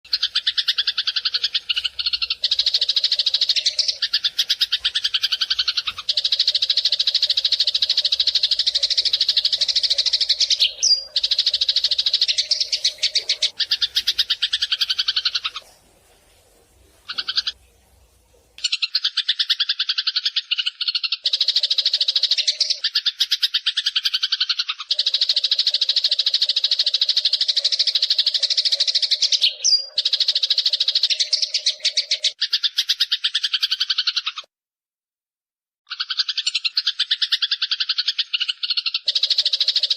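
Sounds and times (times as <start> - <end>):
sparrow chirping: 0.1 - 15.8, 17.0 - 17.6, 18.6 - 34.4, 35.9 - 39.9.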